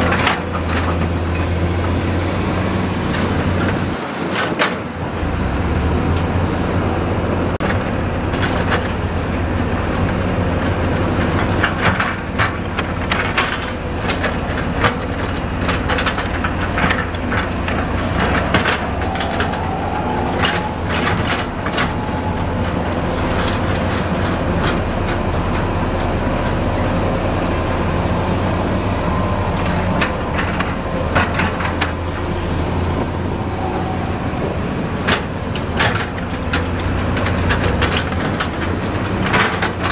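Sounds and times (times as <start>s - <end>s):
diesel engines running: 0.0s - 39.9s
metallic clanks and knocks: 11.3s - 25.7s.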